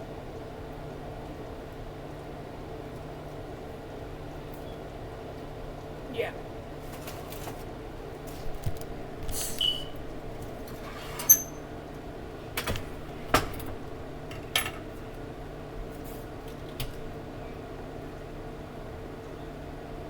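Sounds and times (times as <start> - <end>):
steady low hum: 7.8 - 16.0.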